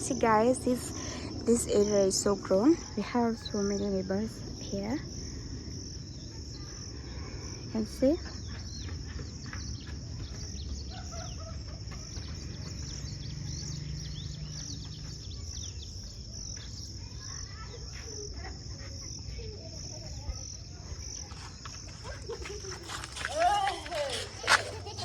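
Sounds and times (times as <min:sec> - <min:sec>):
high insect trill: 0:00.0 - 0:25.0
bird chirps: 0:08.0 - 0:18.3
chickens clucking: 0:08.3 - 0:16.8, 0:23.9 - 0:25.0.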